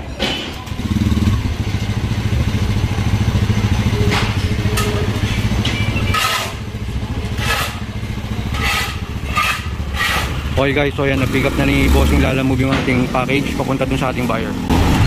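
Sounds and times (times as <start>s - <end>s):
motorcycle engine running: 0.6s - 15.0s.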